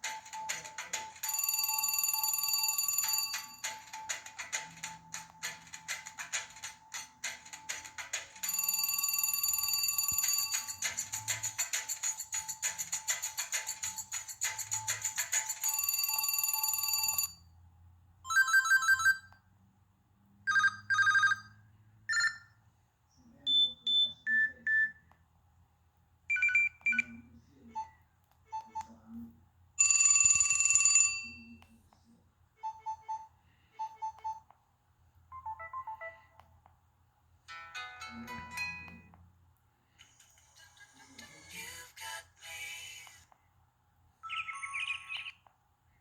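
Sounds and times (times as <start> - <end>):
phone ringtone beeps and chirps: 0.1 - 4.6, 8.4 - 17.4, 18.3 - 19.3, 20.5 - 22.6, 26.3 - 27.2, 35.3 - 36.4, 44.2 - 45.4.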